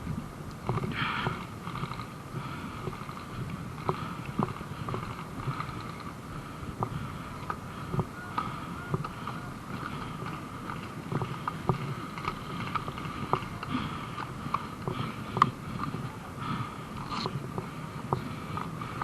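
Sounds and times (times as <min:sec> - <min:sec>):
irregular knocks and clicks: 0:00.5 - 0:16.1, 0:17.0 - 0:19.0.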